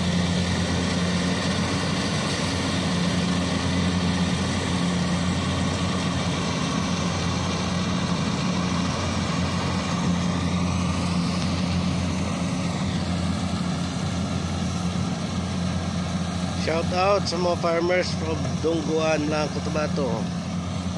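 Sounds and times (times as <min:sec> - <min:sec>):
diesel engine running: 0:00.0 - 0:20.9.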